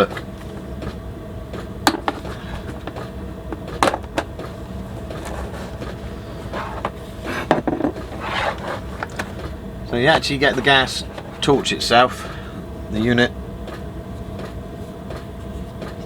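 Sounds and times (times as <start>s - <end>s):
low steady hum: 0.0s - 16.0s
plastic case clicks and knocks: 1.9s - 4.5s, 6.8s - 9.5s.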